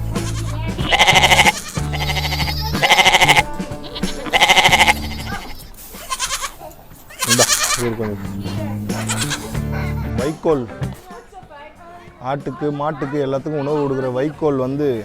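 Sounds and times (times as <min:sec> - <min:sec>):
goats bleating: 0:00.0 - 0:08.0, 0:08.9 - 0:09.7
background music with low notes: 0:00.0 - 0:15.0.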